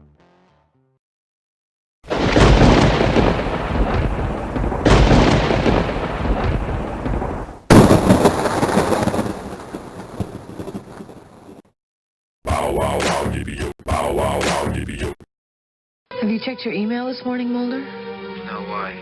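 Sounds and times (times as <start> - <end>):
heavy booms with long rumble: 2.1 - 10.2.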